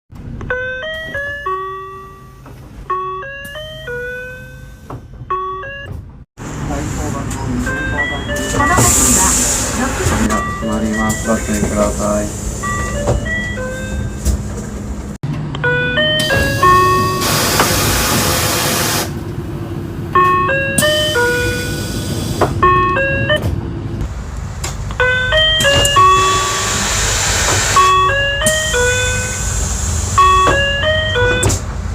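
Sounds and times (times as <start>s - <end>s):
bus engine idling: 0.2s - 31.9s
electronic door chime melody: 0.5s - 6.0s, 7.6s - 8.9s, 10.2s - 11.9s, 12.6s - 14.2s, 15.6s - 17.4s, 20.2s - 21.9s, 25.0s - 26.8s, 27.7s - 29.4s, 30.2s - 31.5s
pneumatic door air hiss: 8.8s - 9.9s, 17.2s - 19.1s, 26.2s - 27.9s, 28.5s - 30.2s.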